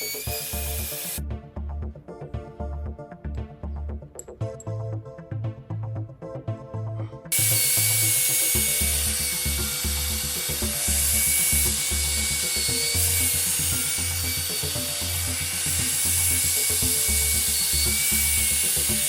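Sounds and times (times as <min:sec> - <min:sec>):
power tool whining: 0:00.0 - 0:01.2, 0:07.3 - 0:19.0
background music: 0:00.0 - 0:19.0.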